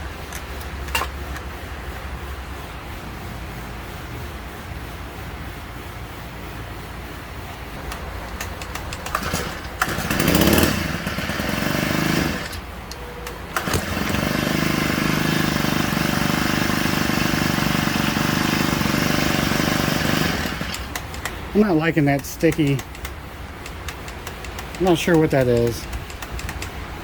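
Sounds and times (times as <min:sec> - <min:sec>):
string trimmer engine starting and running: 0:07.9 - 0:26.7.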